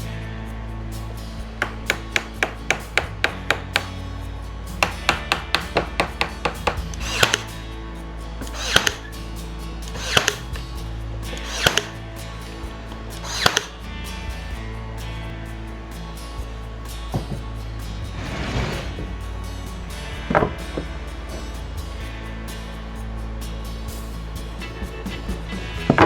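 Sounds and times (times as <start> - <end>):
background music: 0.0 - 26.0
hammer tapping on wood: 1.6 - 4.0, 4.8 - 7.3
heavier strikes on wood: 1.6 - 4.0, 4.8 - 7.4.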